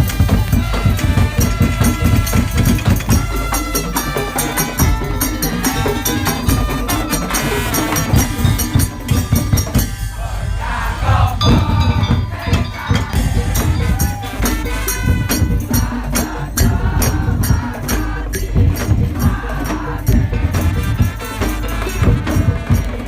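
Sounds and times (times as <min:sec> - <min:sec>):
percussion ensemble beat: 0:00.0 - 0:23.0
pitched melody line: 0:02.0 - 0:16.0.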